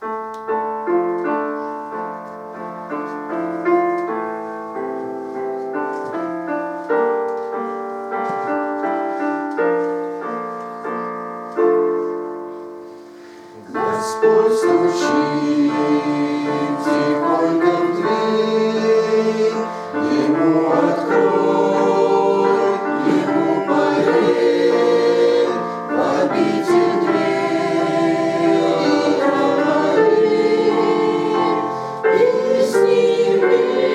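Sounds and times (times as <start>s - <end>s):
piano notes: 0.0s - 33.9s
choir singing a hymn: 13.5s - 33.9s.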